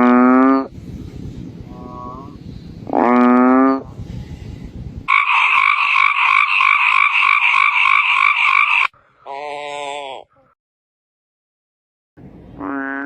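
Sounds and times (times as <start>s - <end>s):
frog croak: 1.7s - 3.8s, 5.1s - 9.5s, 12.6s - 13.0s
frog pulsing trill: 5.1s - 8.9s.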